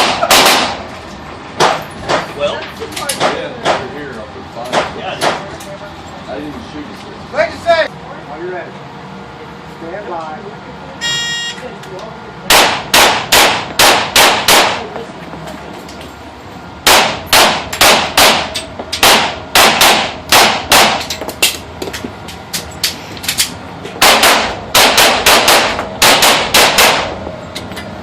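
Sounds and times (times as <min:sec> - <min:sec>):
handgun shots: 0:00.0 - 0:00.8, 0:12.5 - 0:14.9, 0:16.8 - 0:21.2, 0:24.0 - 0:27.2.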